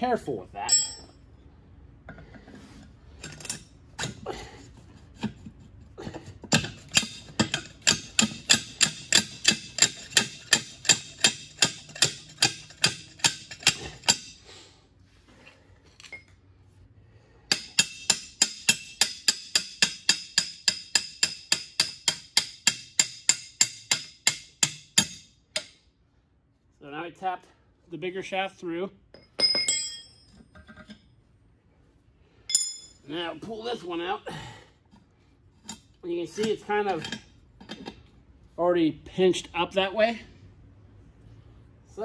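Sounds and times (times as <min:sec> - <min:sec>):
hammer striking metal: 0:00.7 - 0:01.1, 0:17.5 - 0:25.8, 0:32.5 - 0:33.0.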